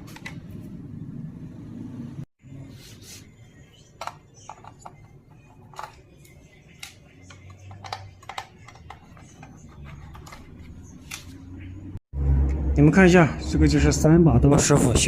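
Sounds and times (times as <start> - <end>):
hand tools clicking and tapping: 6.8 - 11.2.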